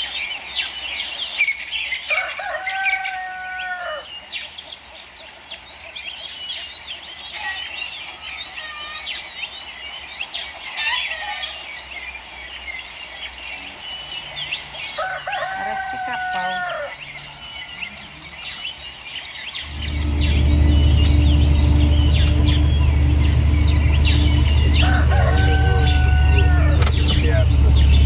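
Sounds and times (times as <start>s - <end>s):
small birds chirping: 0.0s - 28.0s
rooster crowing: 2.1s - 4.1s, 14.9s - 17.7s, 19.6s - 27.8s.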